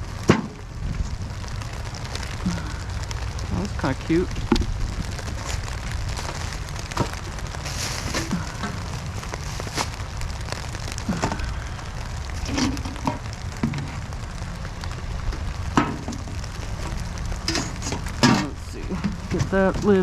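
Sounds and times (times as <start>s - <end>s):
steady rain: 0.0s - 20.0s
items knocking and clattering: 15.7s - 16.4s.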